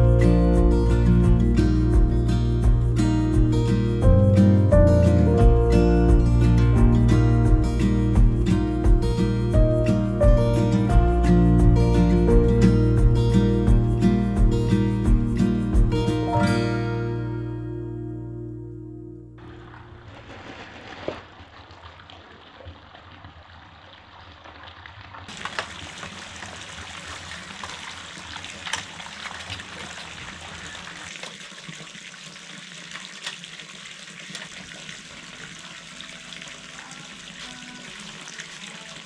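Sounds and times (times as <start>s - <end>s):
running water splashing: 19.4s - 39.0s.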